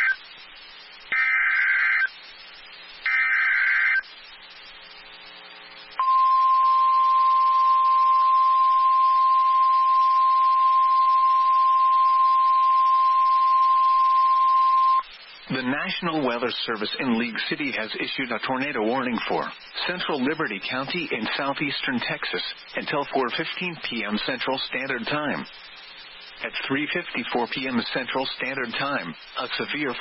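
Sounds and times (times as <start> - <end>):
steady single-pitch alarm tone: 6.0 - 15.0.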